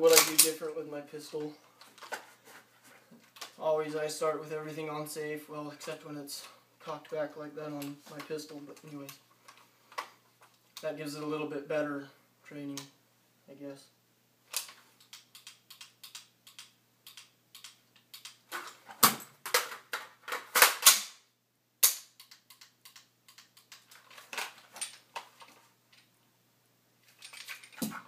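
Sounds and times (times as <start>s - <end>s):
metallic clicks of guns handled: 21.8s - 26.1s, 27.1s - 28.0s.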